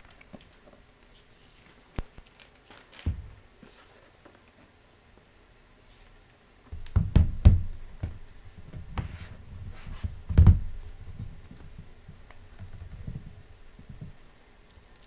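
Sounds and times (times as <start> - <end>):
rustling and scraping: 0.0 - 4.8, 8.0 - 14.2
low thumps and knocks: 6.7 - 9.1, 10.0 - 14.2.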